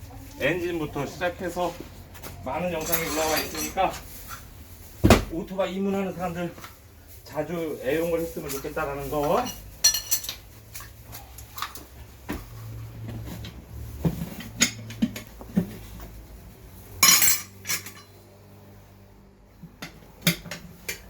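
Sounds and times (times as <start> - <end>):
metal tools clinking: 2.8 - 4.0, 17.0 - 18.2.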